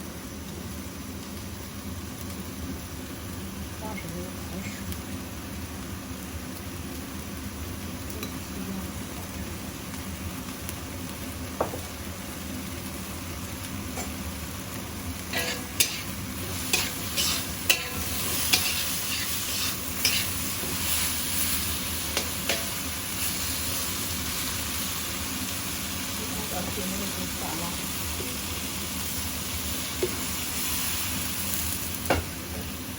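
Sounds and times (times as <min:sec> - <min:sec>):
food sizzling in oil: 0:00.0 - 0:32.9
spatula knocking and scraping pan: 0:15.3 - 0:21.0, 0:22.1 - 0:22.8.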